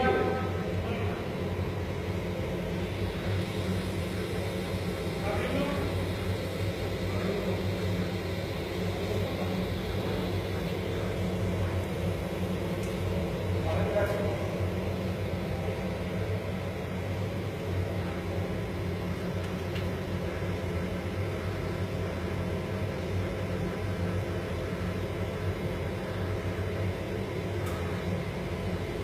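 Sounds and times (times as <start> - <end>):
welding arc buzzing: 1.9 - 16.3.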